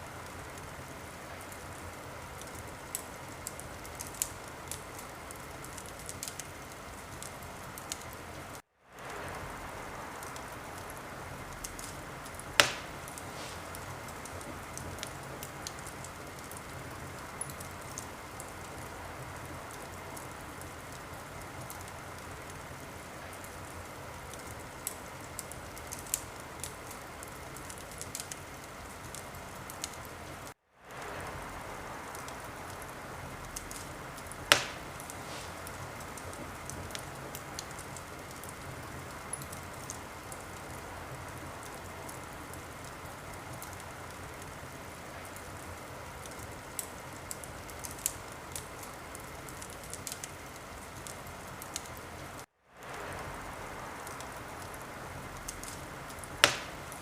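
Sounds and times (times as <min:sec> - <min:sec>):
wood fire crackling and popping: 0:00.0 - 0:57.0.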